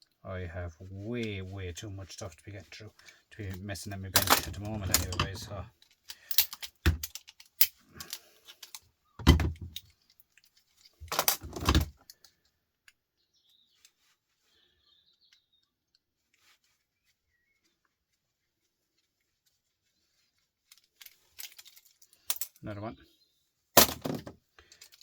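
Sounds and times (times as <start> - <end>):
metal parts clanking and rattling: 4.1 - 12.3, 20.6 - 22.6, 23.8 - 25.0.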